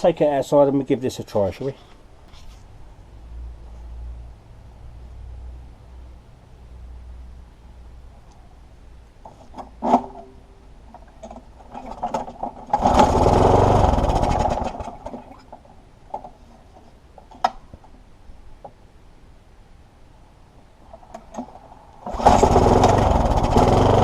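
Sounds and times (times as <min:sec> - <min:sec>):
lawnmower engine cranking: 0:09.2 - 0:16.3, 0:21.0 - 0:24.0.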